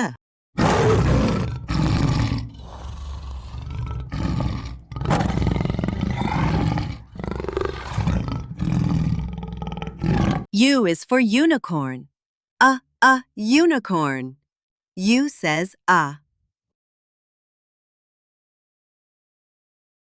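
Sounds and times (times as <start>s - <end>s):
tiger growling: 0.6s - 10.5s
tiger roaring: 0.6s - 10.5s.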